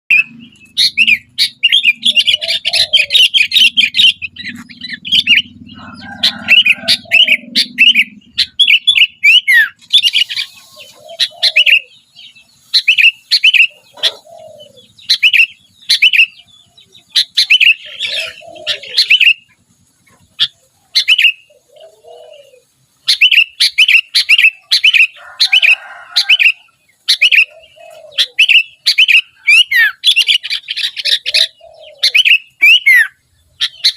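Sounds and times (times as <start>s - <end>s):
bulbul singing: 0.1s - 33.9s
low rumble: 0.2s - 9.2s.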